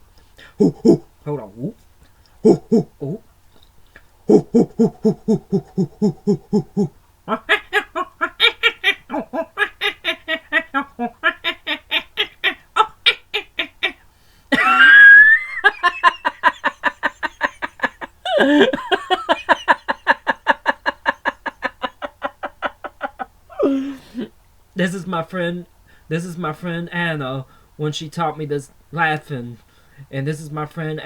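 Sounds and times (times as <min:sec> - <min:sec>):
man imitating monkey hoots: 0:00.4 - 0:01.7, 0:02.4 - 0:03.3, 0:04.2 - 0:14.0
man screeching: 0:00.5 - 0:01.1, 0:02.4 - 0:03.2, 0:04.3 - 0:07.5.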